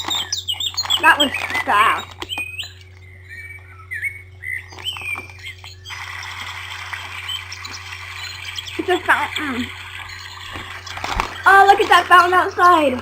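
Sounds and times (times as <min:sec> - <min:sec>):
bird chirping: 0:00.0 - 0:06.3, 0:06.9 - 0:13.0
steady low hum: 0:00.0 - 0:13.0
running water hissing: 0:05.7 - 0:13.0.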